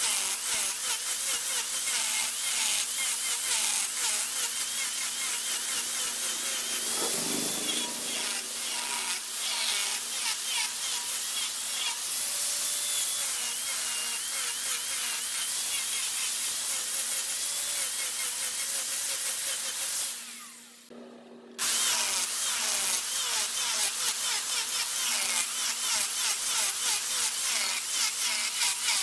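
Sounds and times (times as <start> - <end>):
turning tool cutting hiss and squeals: 0.8 - 16.6
wood lathe motor hum: 3.2 - 10.8.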